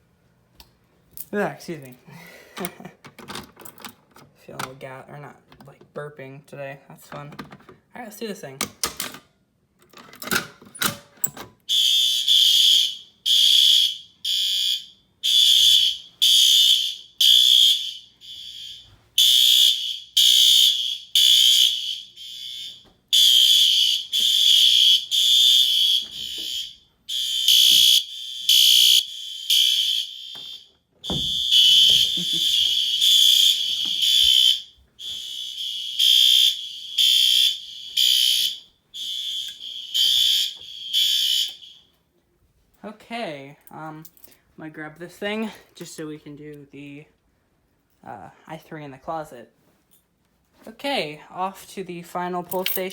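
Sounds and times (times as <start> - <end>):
fire alarm horns beeping: 11.6 - 42.0.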